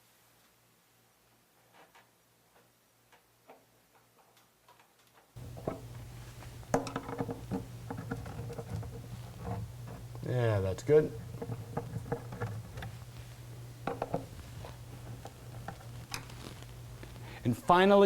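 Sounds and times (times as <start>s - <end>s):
steady low hum: 5.4s - 18.0s.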